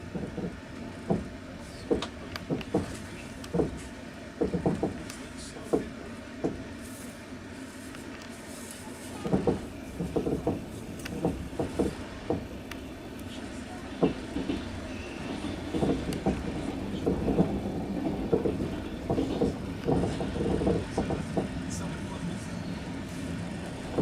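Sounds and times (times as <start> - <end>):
train rumble: 0.0 - 24.0
wheels knocking over rail joints: 0.1 - 5.1, 9.2 - 12.5, 14.0 - 22.2, 23.6 - 24.0.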